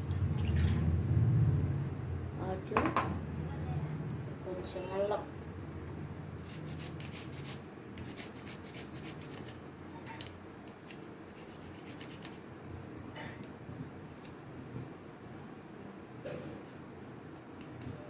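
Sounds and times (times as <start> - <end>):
low steady hum: 0.0 - 6.8.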